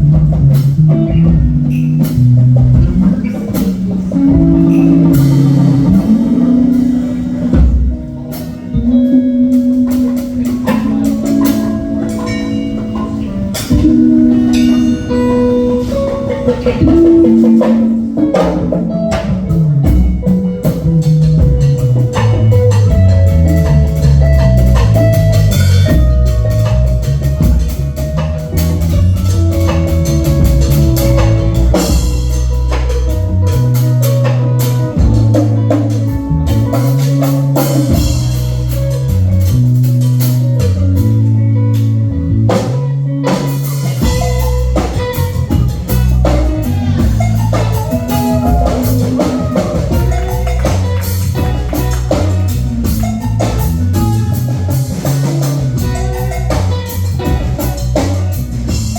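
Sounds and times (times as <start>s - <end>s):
low stepping bass line: 0.0s - 18.2s, 18.8s - 43.3s, 44.0s - 58.9s
drum kit: 0.0s - 58.9s
electric guitar: 0.0s - 58.9s.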